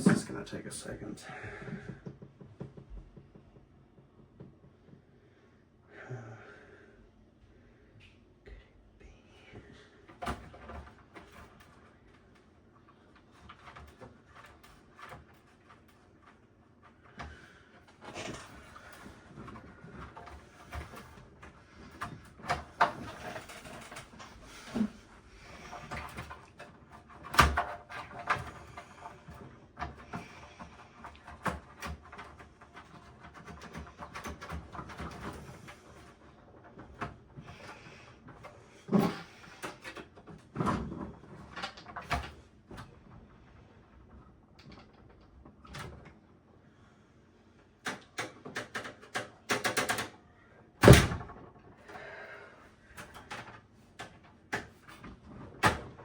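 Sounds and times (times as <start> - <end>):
clicks and rattles of computer parts: 10.1 - 43.2, 47.8 - 50.2, 50.8 - 52.0, 52.9 - 56.0.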